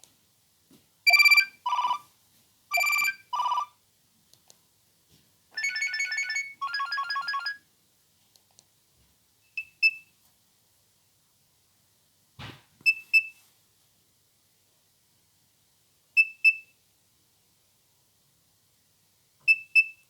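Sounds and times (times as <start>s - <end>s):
mobile phone ringtones: 1.1s - 2.0s, 2.7s - 3.7s, 5.6s - 7.6s.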